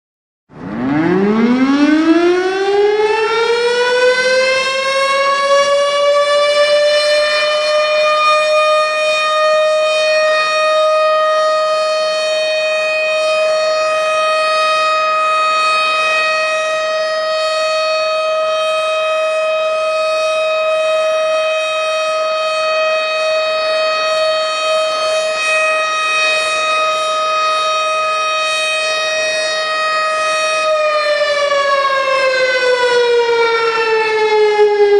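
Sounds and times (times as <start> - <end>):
warning siren winding up: 0.5 - 34.9.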